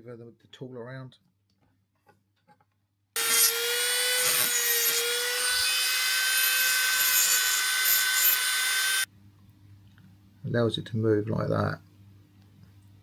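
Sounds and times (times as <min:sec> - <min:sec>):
power tool whining: 0:03.2 - 0:09.1.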